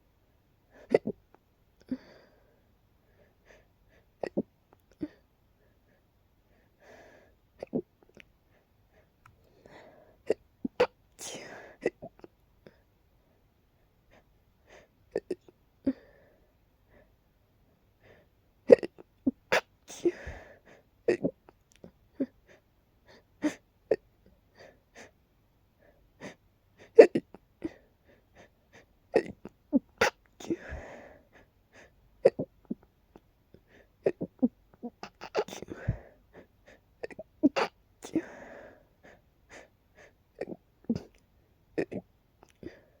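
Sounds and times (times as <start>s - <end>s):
person hiccuping: 0.9s - 1.2s, 4.2s - 4.5s, 32.2s - 32.8s, 34.1s - 35.7s, 37.0s - 37.8s, 41.8s - 42.0s.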